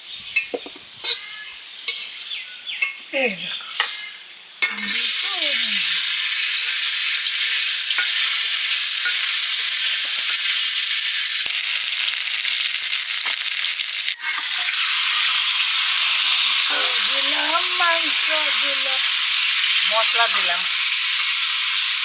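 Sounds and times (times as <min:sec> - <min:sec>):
meat sizzling in hot oil: 0:04.8 - 0:22.0.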